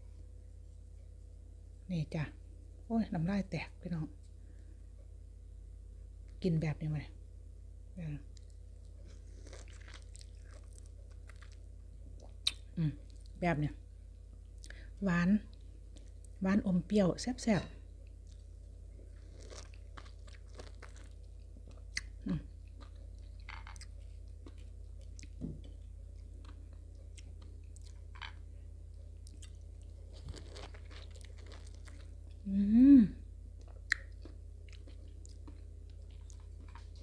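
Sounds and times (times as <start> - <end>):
chewing with wet smacks: 8.3 - 13.4, 19.2 - 28.1, 28.9 - 32.4, 33.6 - 37.0
person humming mm: 22.2 - 22.5, 32.4 - 33.3.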